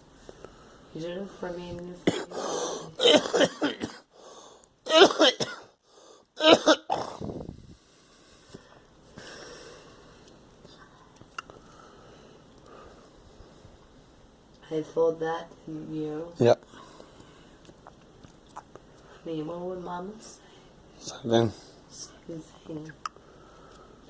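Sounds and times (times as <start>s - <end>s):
girl coughing: 2.0s - 4.1s, 4.9s - 5.7s, 6.4s - 7.3s.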